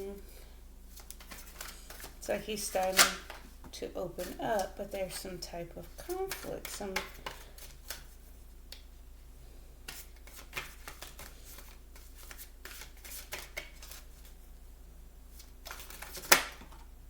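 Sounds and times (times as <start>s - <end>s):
cards being shuffled: 0.9s - 8.9s, 9.8s - 14.4s, 15.3s - 16.9s.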